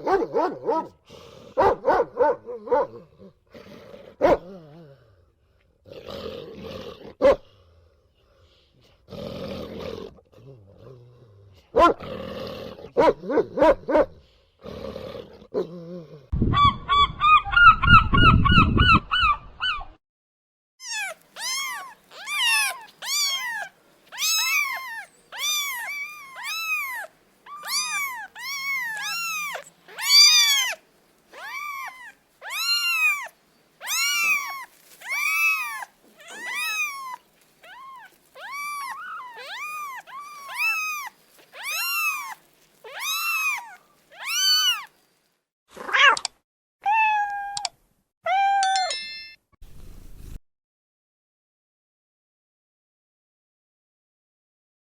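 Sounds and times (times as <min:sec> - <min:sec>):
kitten meowing: 0:20.8 - 0:44.9.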